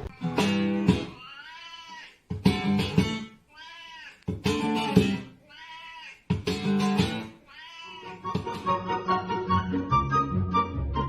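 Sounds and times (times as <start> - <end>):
plucked guitar-like chords: 0.0 - 1.2, 2.4 - 3.3, 4.3 - 5.3, 6.3 - 7.3, 8.2 - 10.9
meow-like cry: 1.2 - 2.2, 3.5 - 4.2, 5.4 - 6.2, 7.5 - 8.2.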